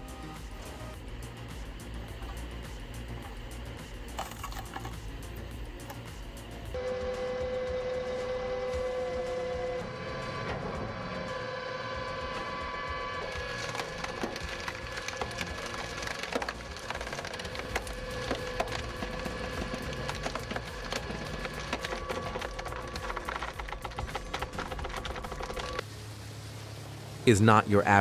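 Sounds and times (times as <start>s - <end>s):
rapid rhythmic clatter: 0.0s - 6.8s, 17.0s - 25.8s
machine whine: 0.0s - 25.9s
log splitter mechanical hum: 0.0s - 27.2s
wood cracking and splintering: 13.6s - 25.8s.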